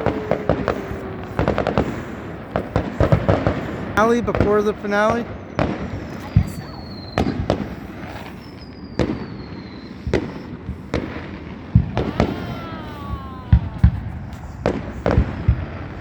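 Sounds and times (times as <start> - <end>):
fireworks booming: 0.0 - 16.0
falling whistling tone: 5.2 - 10.6.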